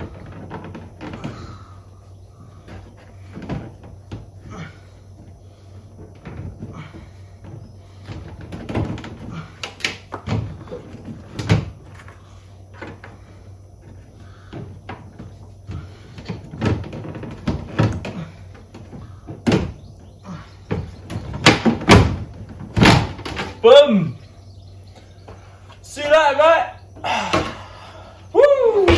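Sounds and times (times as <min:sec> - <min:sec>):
low steady hum: 0:00.0 - 0:28.9.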